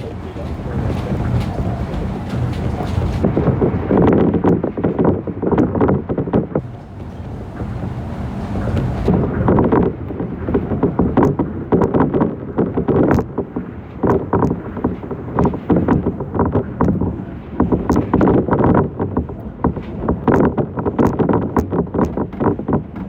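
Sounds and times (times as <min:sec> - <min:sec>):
train running rumble: 0:00.0 - 0:03.4, 0:06.6 - 0:09.7, 0:14.1 - 0:17.3.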